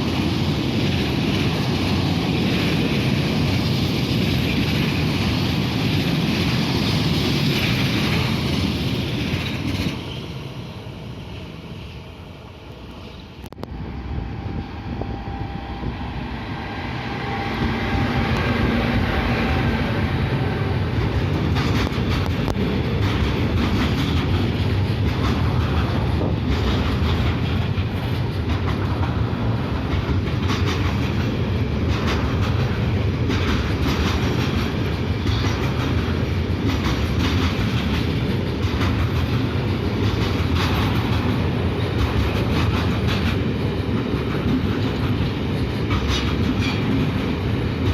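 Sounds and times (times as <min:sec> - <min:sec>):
freight train rumble: 0:00.0 - 0:47.9
wheels clattering over rail joints: 0:20.9 - 0:47.9.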